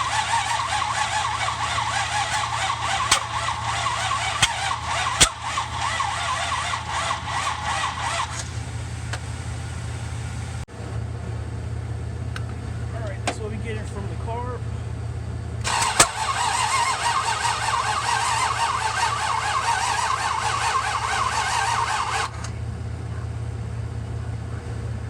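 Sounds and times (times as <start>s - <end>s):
carburettor pops: 0.0s - 6.6s
starter cranking engine: 0.0s - 9.8s, 15.6s - 22.6s.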